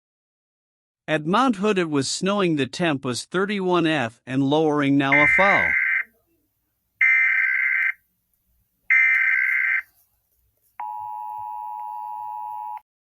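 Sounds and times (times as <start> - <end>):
digital data bursts: 5.1 - 6.0
steady alert tone: 5.1 - 6.0.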